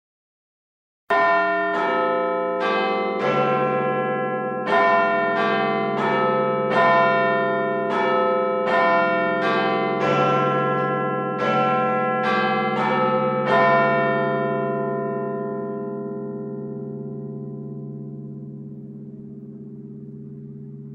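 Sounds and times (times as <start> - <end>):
clock tower bells chiming: 1.1 - 20.6.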